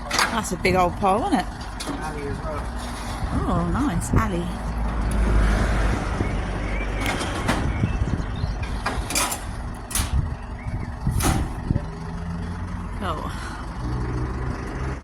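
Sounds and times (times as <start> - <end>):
truck engine rumbling: 0.0 - 15.0
sharp knocks and clanks: 7.0 - 7.8, 11.0 - 11.8.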